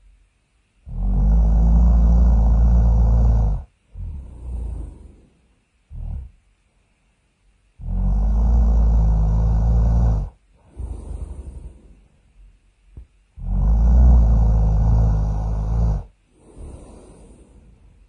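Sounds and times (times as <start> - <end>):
cartoon snoring: 0.8 - 5.3, 5.9 - 6.4, 7.8 - 12.0, 13.4 - 17.7
hissing breath: 0.9 - 6.3, 9.0 - 12.3, 14.4 - 18.0.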